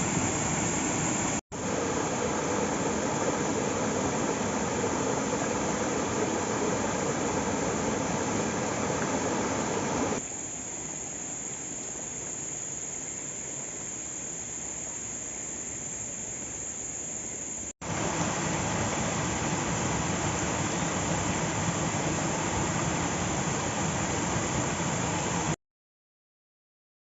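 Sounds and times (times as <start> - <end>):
waterfall rushing: 17.9 - 25.6.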